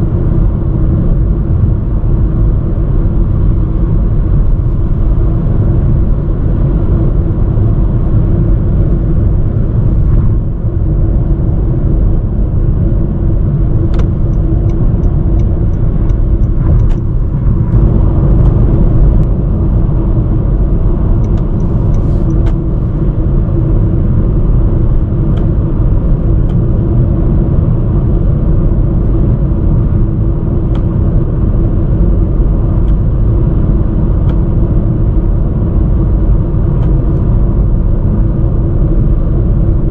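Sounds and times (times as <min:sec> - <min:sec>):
road and tyre noise: 0:00.0 - 0:39.9.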